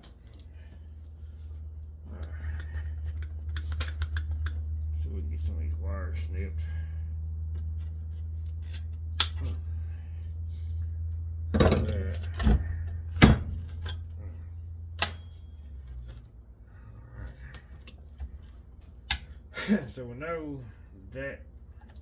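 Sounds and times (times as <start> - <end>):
steady low hum: 0.0 - 22.0
wire snips cutting: 8.4 - 9.6, 19.0 - 19.4.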